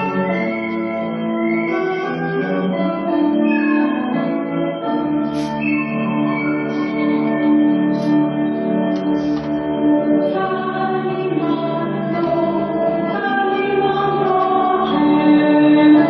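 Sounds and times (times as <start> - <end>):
choir singing held chords: 5.2 - 16.0.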